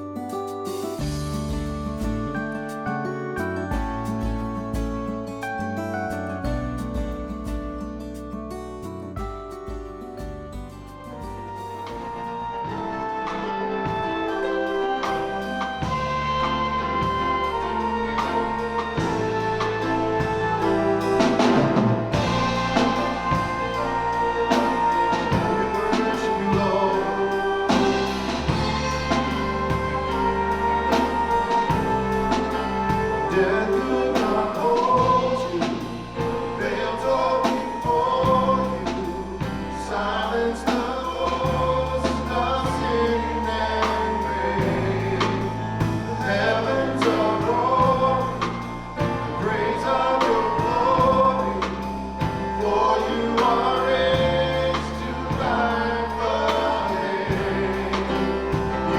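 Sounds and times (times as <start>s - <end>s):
bass and drum kit beat: 0.0s - 58.9s
group of voices singing: 12.0s - 58.9s.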